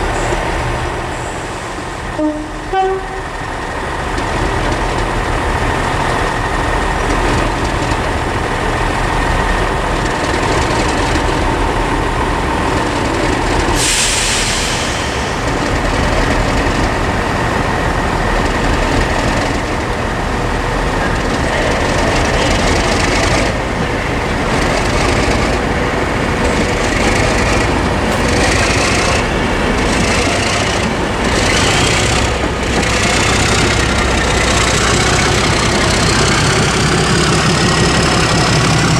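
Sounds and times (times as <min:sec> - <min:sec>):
diesel locomotive running: 0:00.0 - 0:38.9
sudden hiss: 0:13.7 - 0:15.6.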